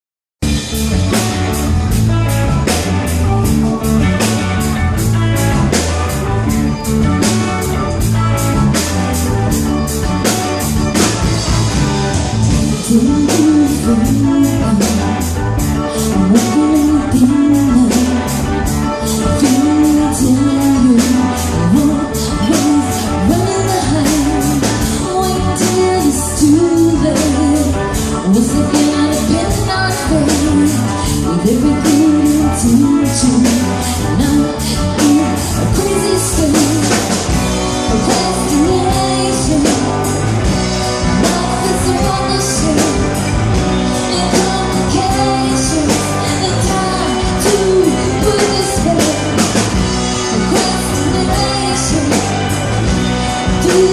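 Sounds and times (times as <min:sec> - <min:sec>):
guitar: 0:00.4 - 0:53.9
person singing: 0:12.4 - 0:53.9.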